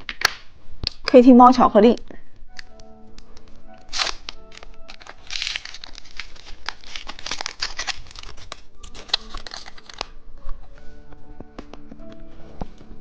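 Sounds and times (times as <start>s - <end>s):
candy wrapper crinkling: 2.4s - 10.8s.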